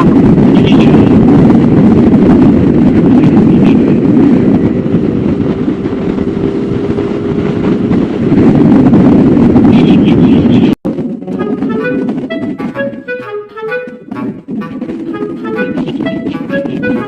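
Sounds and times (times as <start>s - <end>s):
wind rush on microphone: 0.0s - 17.0s
motorcycle engine running: 3.8s - 9.6s.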